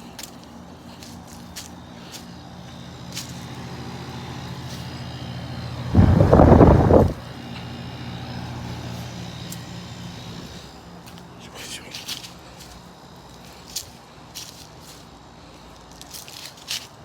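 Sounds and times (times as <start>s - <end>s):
air conditioner humming: 1.8s - 11.6s
loud rushing burst: 6.0s - 7.2s.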